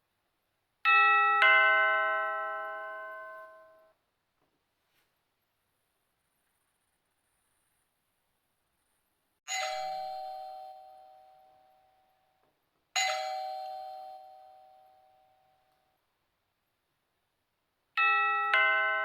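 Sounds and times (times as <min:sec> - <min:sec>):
doorbell chime: 0:00.9 - 0:04.0, 0:09.5 - 0:12.4, 0:13.0 - 0:15.7, 0:18.0 - 0:19.0.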